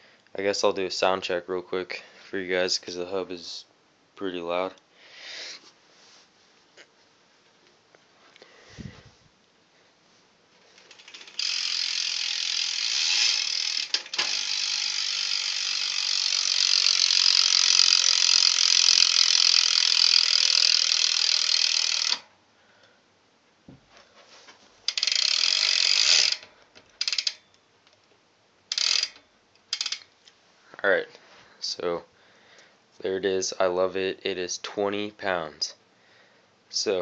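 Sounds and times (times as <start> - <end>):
bicycle hub ratcheting clicks: 10.8 - 22.3, 24.9 - 27.5, 28.7 - 30.1.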